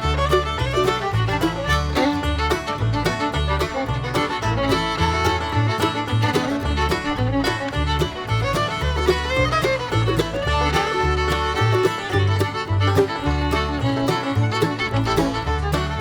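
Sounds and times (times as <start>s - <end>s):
upbeat fiddle music: 0.0s - 16.0s.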